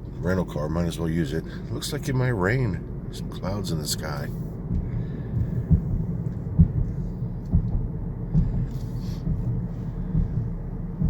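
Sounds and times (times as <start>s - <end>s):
car interior road and engine noise: 0.0s - 11.0s
car bumps: 4.6s - 11.0s.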